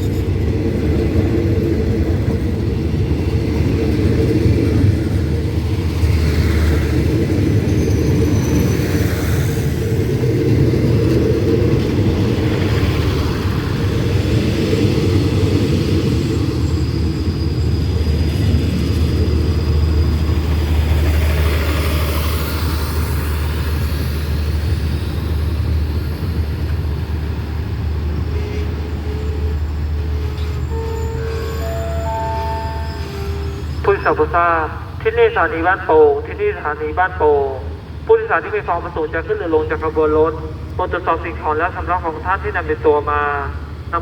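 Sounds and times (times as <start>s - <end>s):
diesel locomotive rumble: 0.0s - 44.0s.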